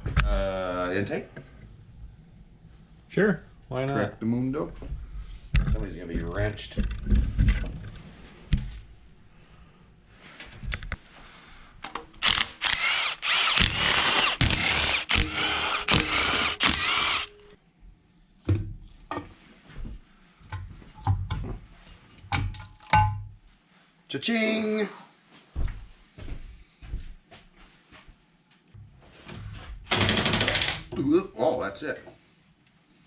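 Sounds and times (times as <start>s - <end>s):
power driver bursts: 12.2s - 17.5s.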